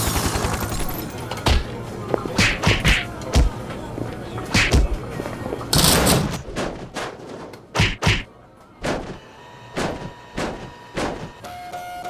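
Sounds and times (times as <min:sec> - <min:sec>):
punch thuds and whacks: 0:02.4 - 0:03.5, 0:04.5 - 0:05.0, 0:06.5 - 0:09.2, 0:09.8 - 0:11.4.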